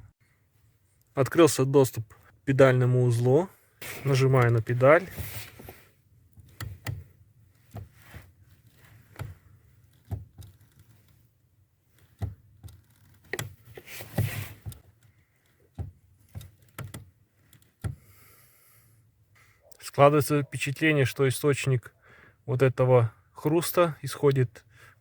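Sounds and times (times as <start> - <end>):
clutch pedal crunching clicks: 4.0 - 18.2.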